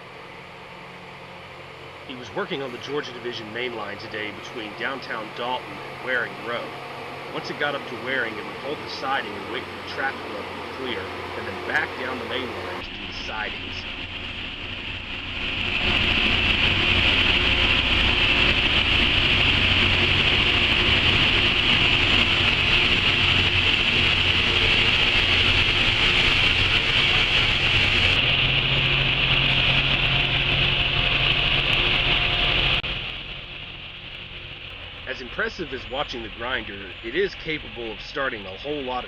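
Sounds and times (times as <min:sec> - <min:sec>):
low engine drone: 0:00.0 - 0:39.0
rail grinder grinding hiss: 0:00.0 - 0:39.0.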